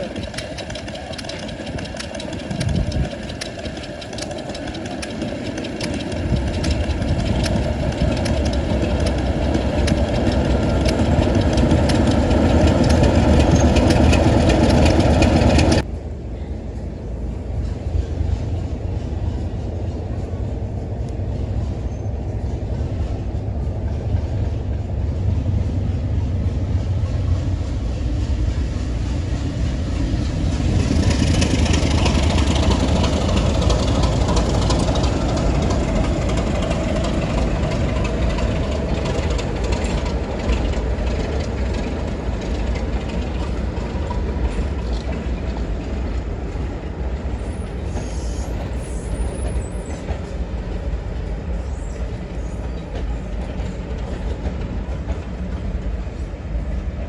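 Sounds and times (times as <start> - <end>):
train rumbling past: 0.0 - 57.0
train hiss: 46.7 - 57.0.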